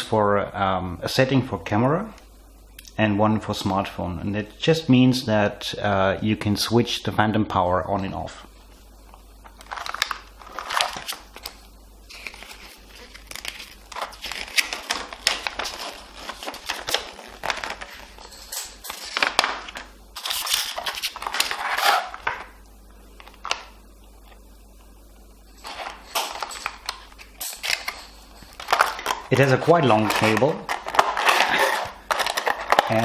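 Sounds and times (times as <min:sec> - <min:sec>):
packaging crinkling and rustling: 0:09.0 - 0:22.6, 0:23.2 - 0:24.9, 0:25.5 - 0:33.0.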